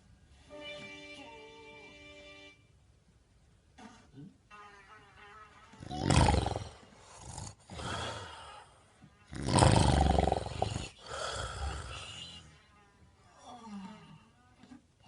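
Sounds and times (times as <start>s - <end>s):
loud rattling snoring: 5.8s - 8.5s, 9.3s - 12.4s
rasping breath: 5.9s - 12.6s.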